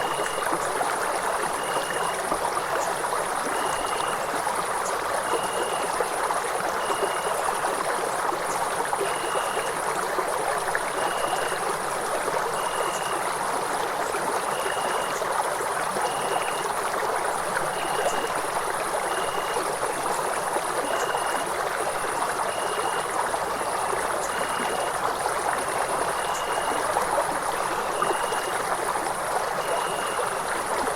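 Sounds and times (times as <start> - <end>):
stream running: 0.0 - 30.9.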